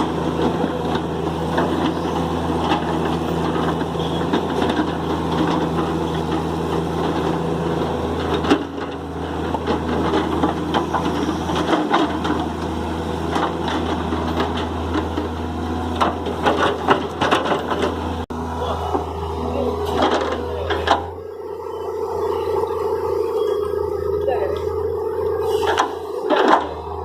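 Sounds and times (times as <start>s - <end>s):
diesel engine running: 0.0s - 27.0s
knocks and clatter: 13.3s - 18.0s.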